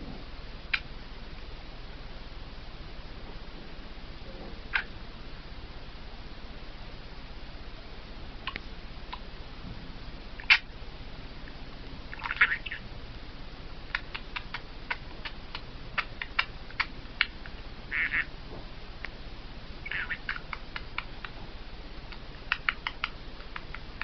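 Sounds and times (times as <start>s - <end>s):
budgie pecking at mirror clicks: 13.9s - 18.3s, 19.8s - 21.4s, 22.1s - 24.0s.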